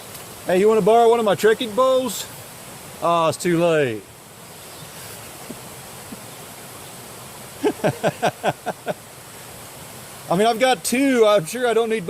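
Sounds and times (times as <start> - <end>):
creek water rushing: 0.0 - 12.0
person laughing: 7.6 - 9.0.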